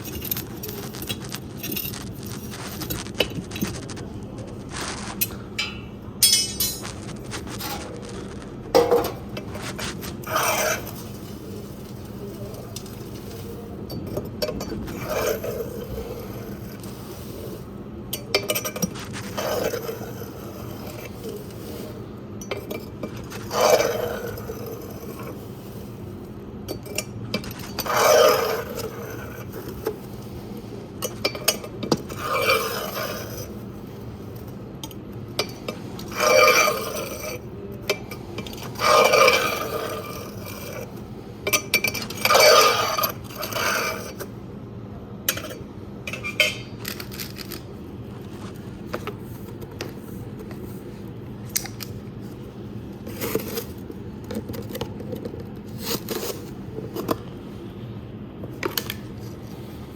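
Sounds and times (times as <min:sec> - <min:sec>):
ash scraping: 0:00.0 - 0:13.6
tool clinking against metal: 0:05.6 - 0:06.9.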